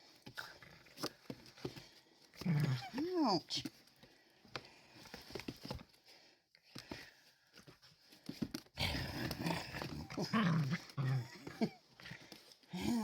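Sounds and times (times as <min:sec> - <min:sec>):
soft scuffling clicks: 0:00.0 - 0:12.7
puppy growling: 0:08.8 - 0:13.0.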